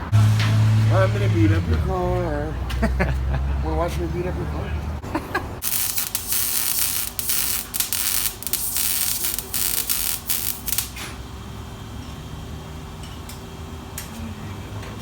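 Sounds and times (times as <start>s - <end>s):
power tool cutting exhaust pipe: 5.6s - 11.0s.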